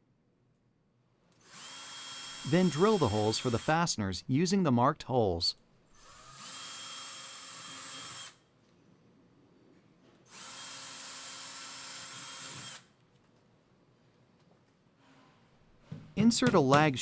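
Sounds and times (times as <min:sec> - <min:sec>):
power drill whining: 0:01.5 - 0:03.7, 0:06.0 - 0:08.4, 0:10.3 - 0:12.9.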